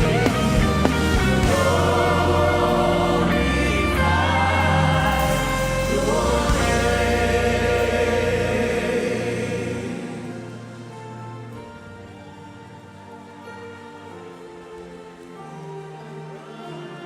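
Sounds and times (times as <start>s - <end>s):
low bass line: 0.0s - 10.9s
choir singing: 0.0s - 17.0s.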